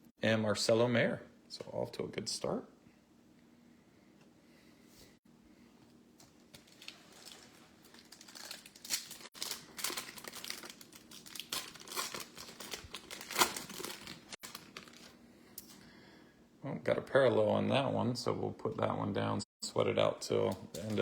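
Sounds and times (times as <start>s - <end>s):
foil wrapper crinkling: 6.2s - 15.2s.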